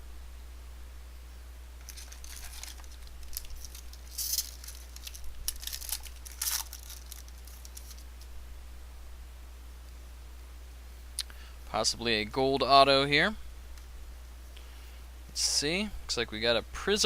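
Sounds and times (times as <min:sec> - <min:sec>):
low electrical hum: 0:00.0 - 0:17.0
foil wrapper crinkling: 0:01.8 - 0:08.3
foil wrapper ripping: 0:01.8 - 0:08.3.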